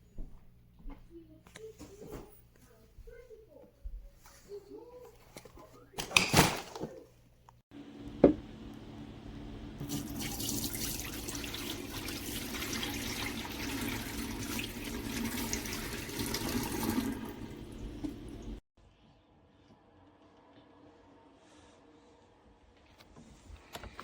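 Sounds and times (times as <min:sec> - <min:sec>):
water running: 0:09.8 - 0:18.6.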